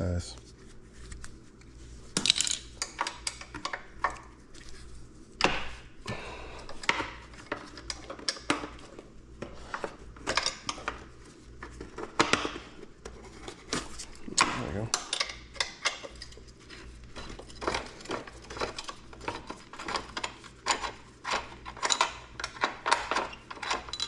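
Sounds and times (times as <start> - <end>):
hand tools clicking and rattling: 17.2 - 24.0.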